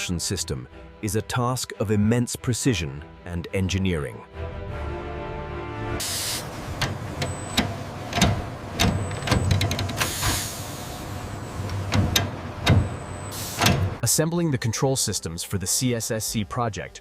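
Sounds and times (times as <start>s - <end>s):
air hiss: 6.0s - 6.9s, 9.9s - 11.9s, 13.2s - 13.9s
low machinery hum: 6.0s - 14.0s
mechanical knocks and clicks: 6.6s - 10.4s, 11.1s - 14.0s.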